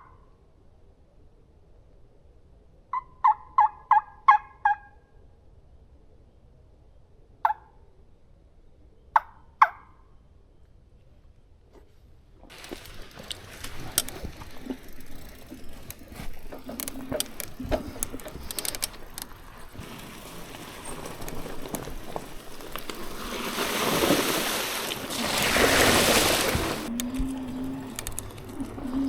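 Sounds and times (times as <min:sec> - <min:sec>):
light crackles: 0:11.7 - 0:29.0.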